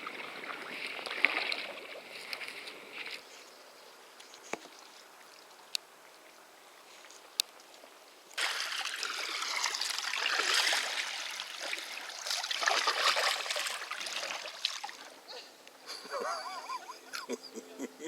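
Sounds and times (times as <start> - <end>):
water pouring and splashing: 0.0 - 2.7, 8.4 - 15.3.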